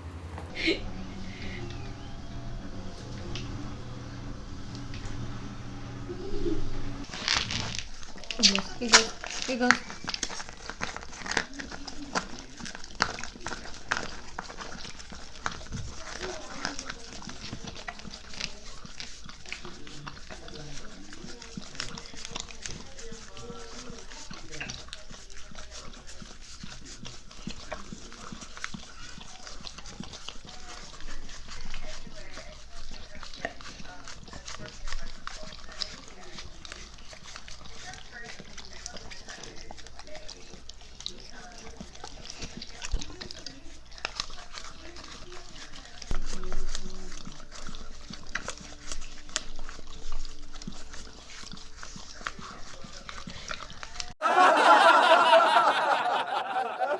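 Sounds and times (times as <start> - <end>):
loud wavering sound: 0.0 - 7.1
steady low hum: 0.0 - 7.2
dog licking and smacking: 0.0 - 54.2.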